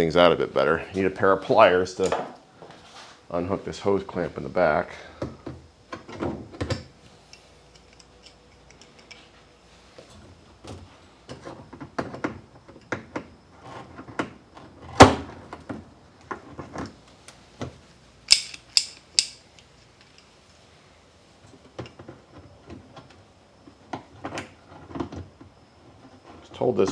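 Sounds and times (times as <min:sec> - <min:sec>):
metal clicks and knocks: 0:18.3 - 0:20.3.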